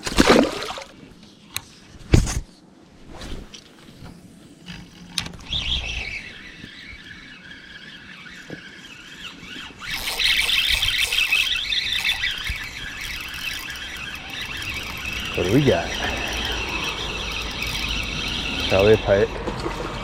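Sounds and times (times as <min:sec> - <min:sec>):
fishing reel whirring: 0:05.6 - 0:19.4.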